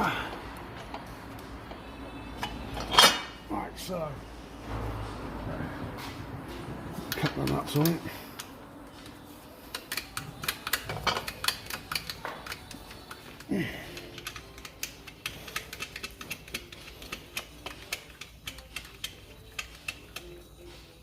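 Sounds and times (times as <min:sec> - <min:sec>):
hand ratchet clicking: 0:09.7 - 0:20.7.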